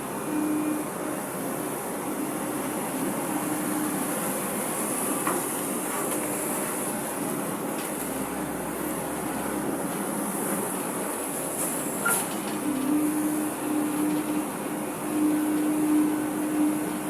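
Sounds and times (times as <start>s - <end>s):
excavator engine and hydraulics: 0.0s - 17.0s.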